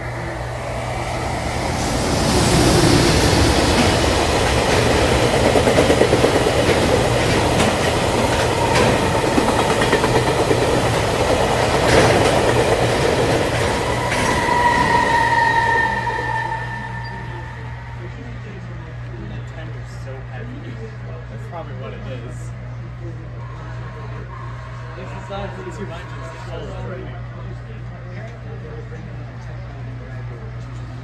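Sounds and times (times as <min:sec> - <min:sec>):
freight train rumble: 0:00.0 - 0:21.3
wheels clattering over rail joints: 0:03.7 - 0:14.6
high squealing tone: 0:13.6 - 0:18.5.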